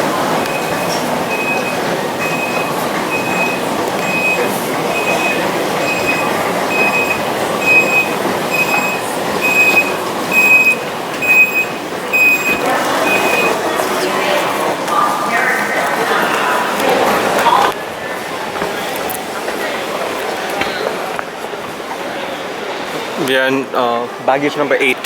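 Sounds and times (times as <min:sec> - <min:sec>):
airport terminal hubbub: 0:00.0 - 0:25.0
high electronic warning beep: 0:00.4 - 0:13.6.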